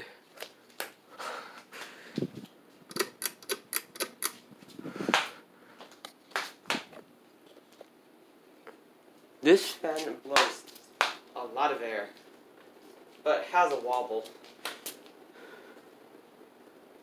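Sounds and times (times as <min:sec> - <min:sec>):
ceiling fan running: 0:00.0 - 0:17.0
sharp clicks: 0:02.9 - 0:04.4.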